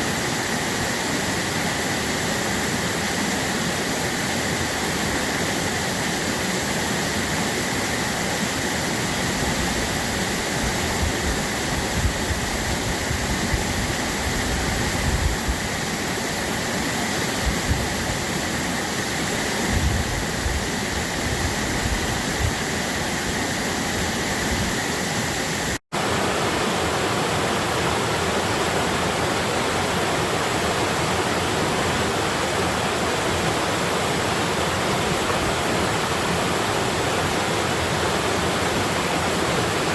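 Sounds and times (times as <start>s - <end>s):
babbling stream water rushing: 0.0s - 39.9s.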